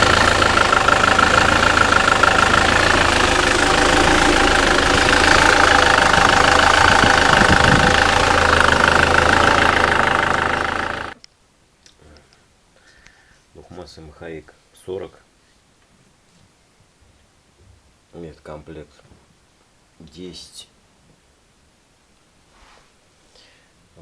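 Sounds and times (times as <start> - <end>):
diesel engine idling: 0.0 - 11.2.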